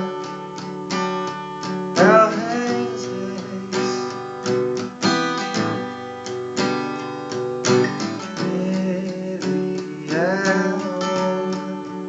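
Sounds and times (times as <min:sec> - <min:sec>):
acoustic guitar strumming chords: 0:00.0 - 0:12.0
person singing: 0:01.9 - 0:04.2, 0:08.2 - 0:12.0.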